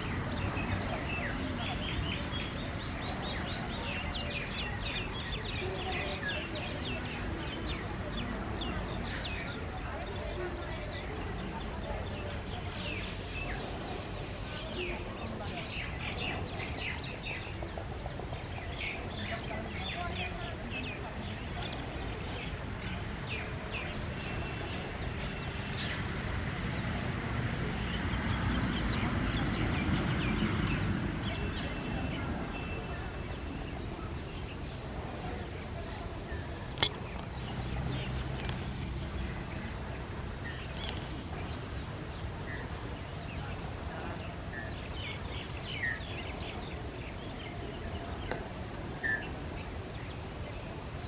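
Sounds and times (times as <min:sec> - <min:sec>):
birds chirping: 0:27.7 - 0:51.0.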